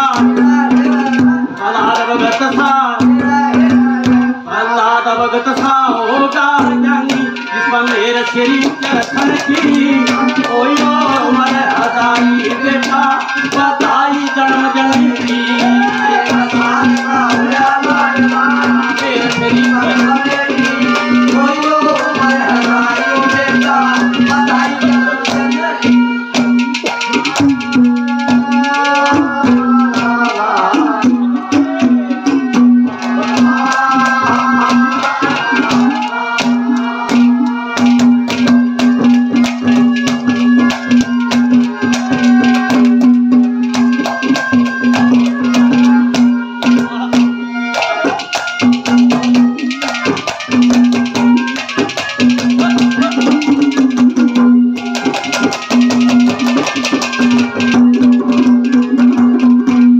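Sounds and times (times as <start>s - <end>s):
rattling percussion beat: 0.0s - 4.4s, 5.4s - 59.9s
hand drums: 0.0s - 4.6s, 5.2s - 59.9s.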